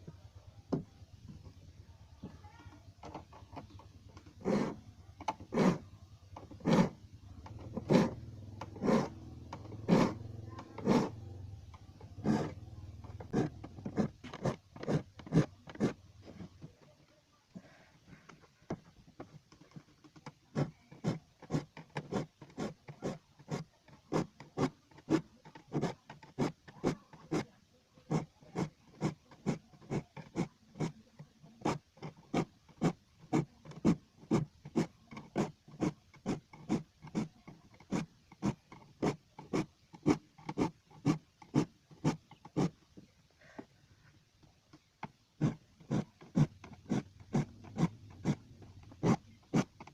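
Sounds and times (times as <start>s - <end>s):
file rasping on saw teeth: 3.0s - 11.3s, 11.9s - 16.0s, 20.5s - 42.8s, 45.4s - 49.9s.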